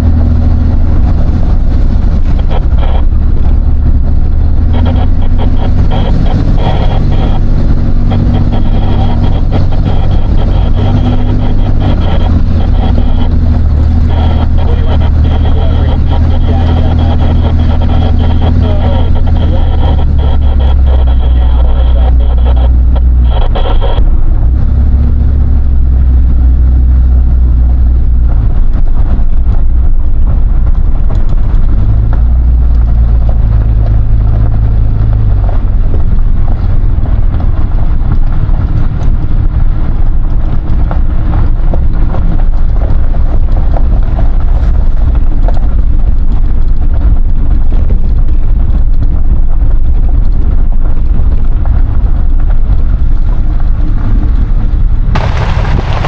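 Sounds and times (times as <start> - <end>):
engine rumble: 0.0 - 56.0
road noise: 0.0 - 56.0.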